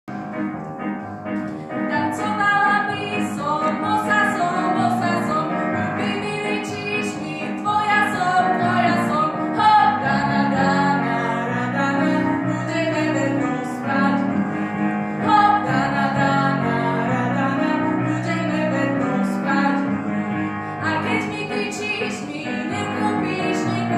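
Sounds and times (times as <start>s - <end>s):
musical accompaniment: 0.1s - 23.9s
woman singing: 1.9s - 14.4s, 15.2s - 20.0s, 20.8s - 23.9s.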